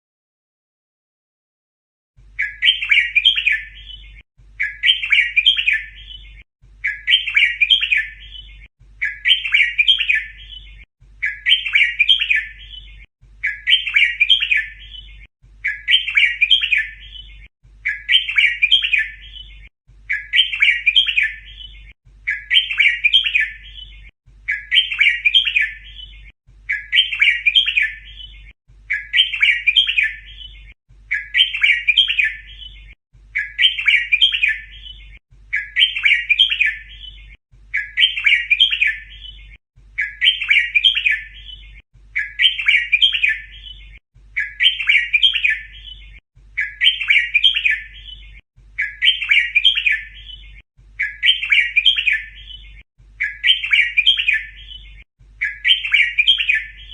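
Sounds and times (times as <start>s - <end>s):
bulbul chattering song: 2.4s - 56.9s.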